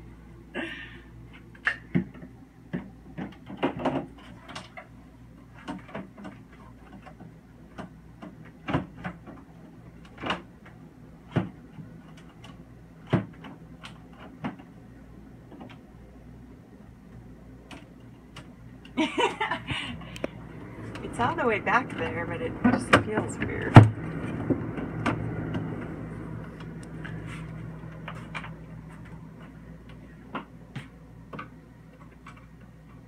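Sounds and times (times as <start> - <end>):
faint low hum: 0.0 - 33.0
freezer parts clicking and knocking: 1.4 - 14.8.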